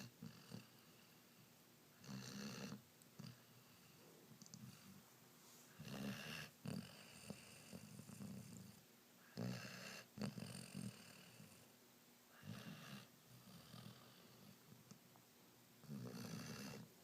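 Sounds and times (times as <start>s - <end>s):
puppy snoring: 0.0s - 5.0s, 5.7s - 11.7s, 12.3s - 14.8s, 15.8s - 17.0s
soft breathing: 3.2s - 9.5s.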